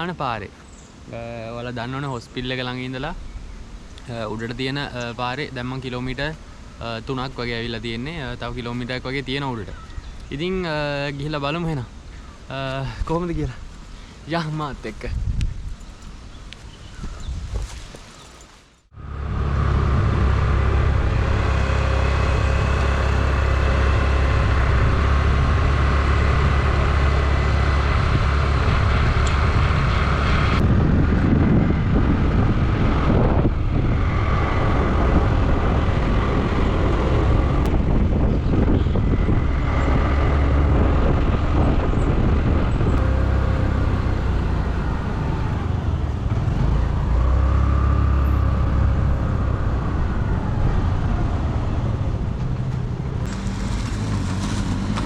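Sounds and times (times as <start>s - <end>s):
road noise: 0.0s - 55.0s
vehicle engine running: 18.9s - 55.0s.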